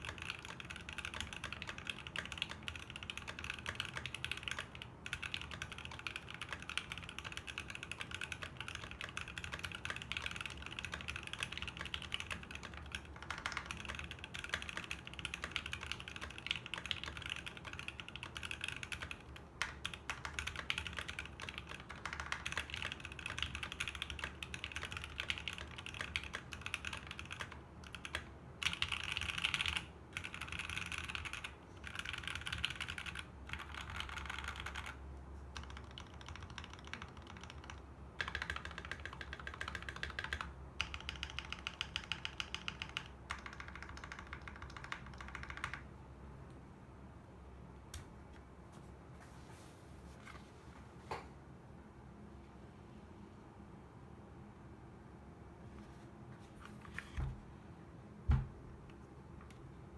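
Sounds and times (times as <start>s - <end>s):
fast mechanical keyboard typing: 0.0s - 45.9s.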